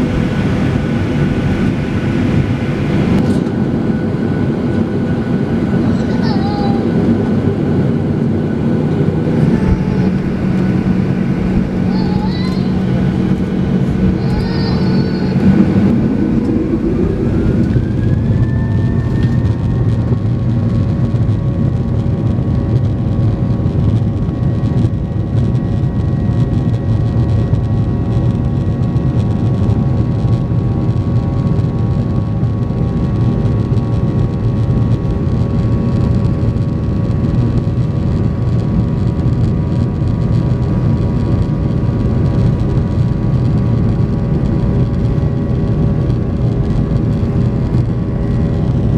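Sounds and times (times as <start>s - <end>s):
jet engines spooling up: 0.0s - 23.0s.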